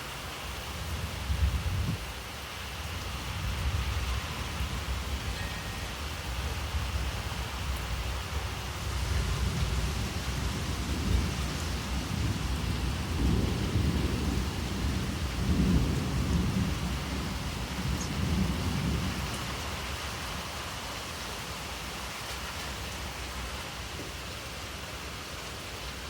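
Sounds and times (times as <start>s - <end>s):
heavy rain falling: 0.0s - 26.0s
rolling thunder rumble: 8.8s - 20.0s.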